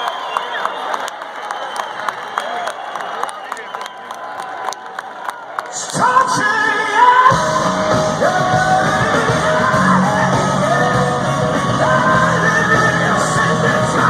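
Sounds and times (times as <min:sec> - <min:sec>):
person singing: 0:05.7 - 0:14.0
live hard rock band: 0:05.9 - 0:14.0.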